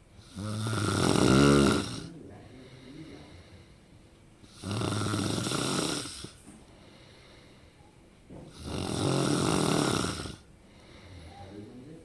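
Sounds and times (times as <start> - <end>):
person snoring loudly: 0.2 - 2.1, 4.5 - 6.4, 8.5 - 10.4.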